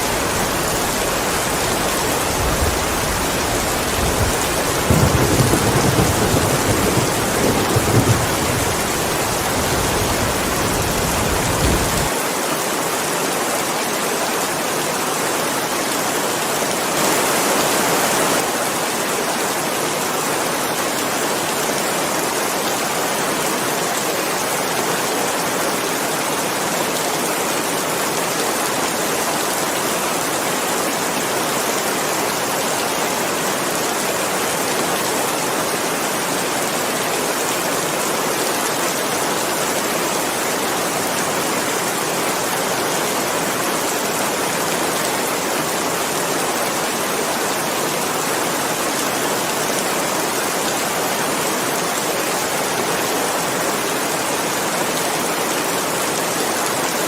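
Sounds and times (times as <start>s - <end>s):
heavy rain hiss: 0.0s - 12.7s
thunder rumble: 0.2s - 12.1s.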